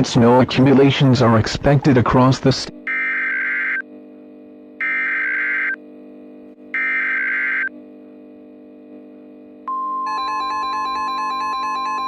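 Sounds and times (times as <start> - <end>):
buzzy digital data bursts: 2.1 - 3.9, 4.8 - 5.8, 6.7 - 7.7
steady high alarm tone: 2.8 - 3.9, 4.8 - 5.8, 6.7 - 7.8, 9.7 - 12.0.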